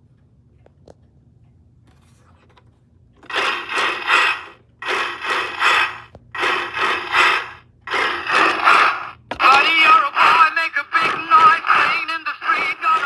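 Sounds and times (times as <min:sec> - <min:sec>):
distorted toy sound effects: 0:03.3 - 0:13.0.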